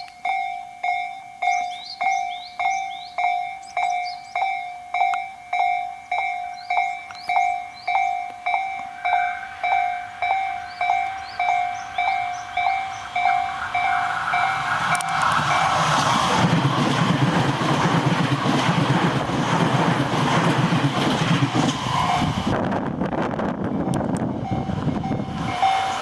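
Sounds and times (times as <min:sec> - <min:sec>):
level crossing bell clanging: 0:00.0 - 0:15.7
electric train passing: 0:00.0 - 0:26.0.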